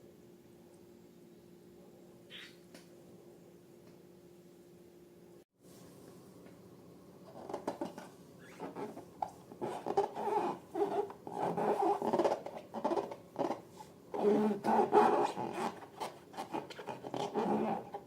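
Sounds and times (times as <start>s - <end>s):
balloons squeaking and rubbing: 8.4s - 9.0s, 9.6s - 13.6s, 14.2s - 18.0s.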